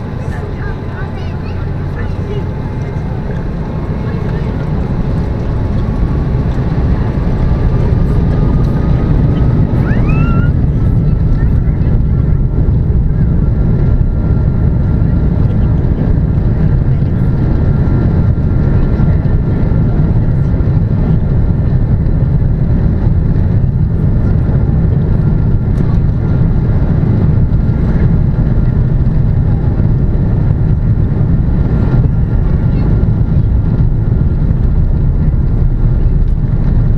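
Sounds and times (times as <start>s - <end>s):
jet engines rumbling: 0.0s - 36.9s.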